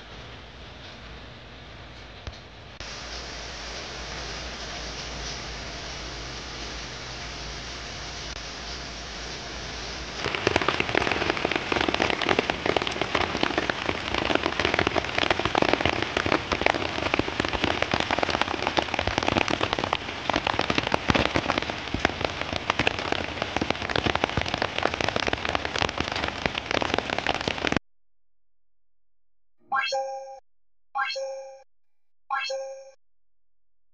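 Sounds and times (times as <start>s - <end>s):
rain pattering on a surface: 2.8s - 27.8s.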